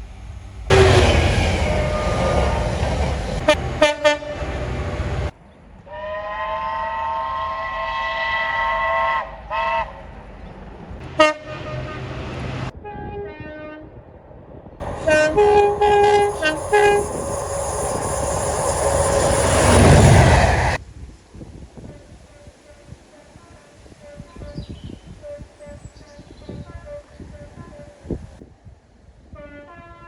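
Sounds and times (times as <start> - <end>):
train passing rush: 0.0 - 5.8, 14.8 - 20.8
train horn toots: 0.7 - 5.3, 5.9 - 10.0, 11.1 - 12.2, 14.8 - 20.8.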